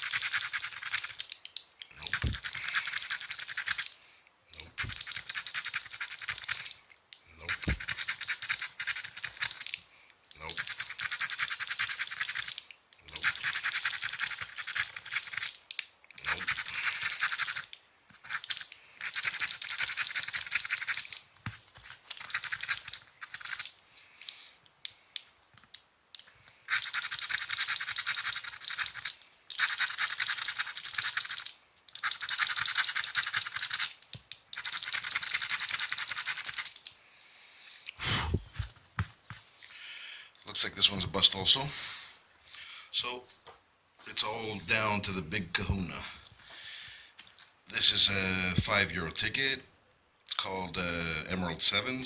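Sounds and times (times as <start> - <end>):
scratching lottery ticket: 0.0 - 1.2, 4.7 - 6.7, 7.4 - 9.6, 10.4 - 12.5, 13.1 - 15.6, 16.2 - 23.7, 26.7 - 34.0.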